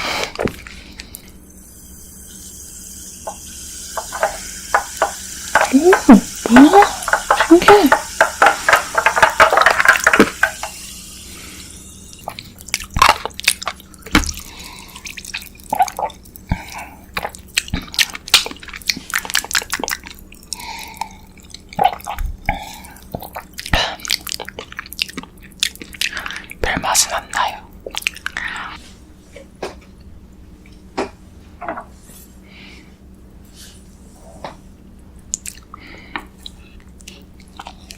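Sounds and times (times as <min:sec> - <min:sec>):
chewing sweets: 0:12.2 - 0:28.8, 0:35.2 - 0:37.9
wet mouth clicks: 0:35.3 - 0:37.9.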